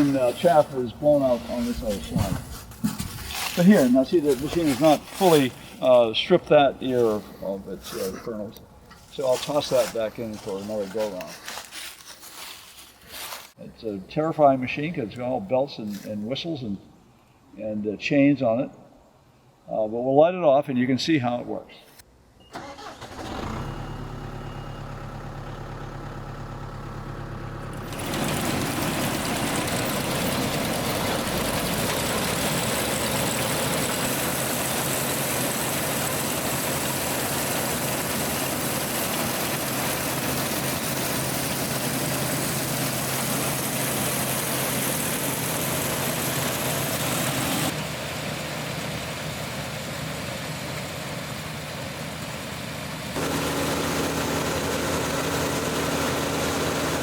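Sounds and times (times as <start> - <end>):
tractor engine idling: 0.0 - 11.9, 22.5 - 57.0
farm machine chains and blower: 0.0 - 13.6, 22.5 - 47.9, 53.1 - 57.0.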